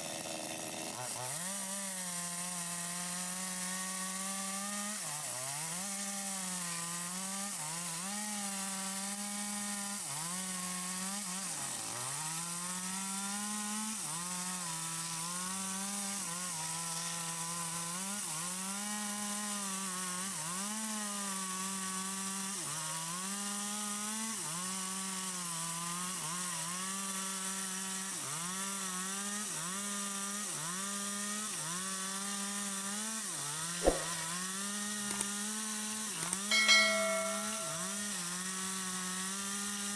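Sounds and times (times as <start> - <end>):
chainsaw cutting through wood: 0.0 - 39.9
sharp knock: 33.8 - 34.4, 36.5 - 38.0.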